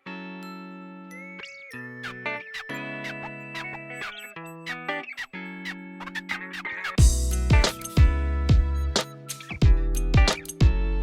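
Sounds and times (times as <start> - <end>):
plucked guitar notes: 2.0 - 11.0
deep bass and beat: 7.0 - 11.0.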